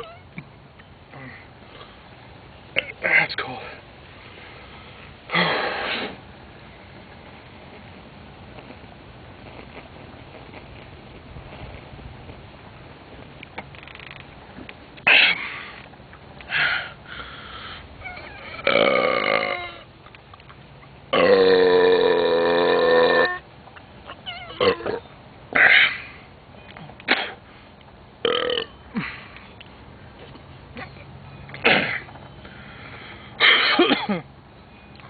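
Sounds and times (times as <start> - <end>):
person belching: 18.6 - 19.7, 21.1 - 23.4, 28.2 - 29.1.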